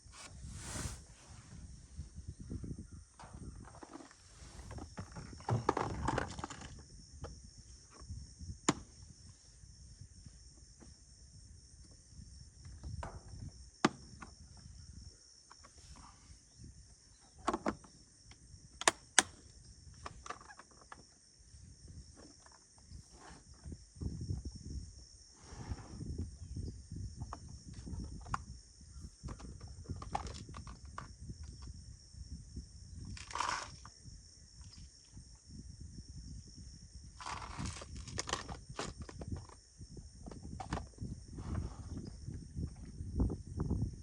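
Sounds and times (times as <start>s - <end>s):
rustles: 0.0s - 2.3s, 3.2s - 6.8s
insect chorus: 0.0s - 44.0s.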